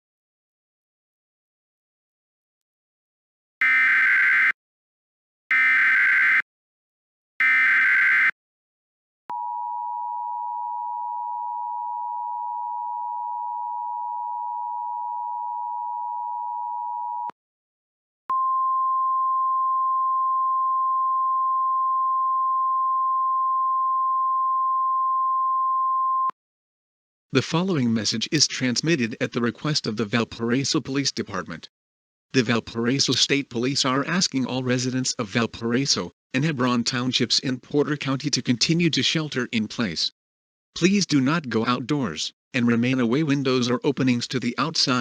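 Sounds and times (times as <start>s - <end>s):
harsh digital header bursts: 3.6s - 4.6s, 5.5s - 6.4s, 7.4s - 8.3s
steady high alert tone: 3.6s - 4.6s, 5.5s - 6.4s, 7.4s - 8.4s
two-tone attention signal: 3.6s - 4.6s, 5.5s - 6.4s, 7.4s - 8.3s.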